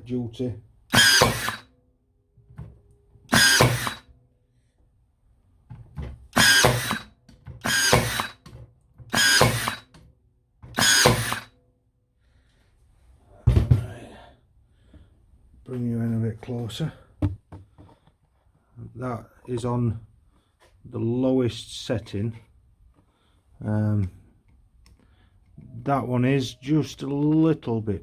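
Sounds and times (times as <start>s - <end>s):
nail gun firing: 0.9s - 1.7s, 3.3s - 4.1s, 6.3s - 8.5s, 9.1s - 10.0s, 10.7s - 11.5s.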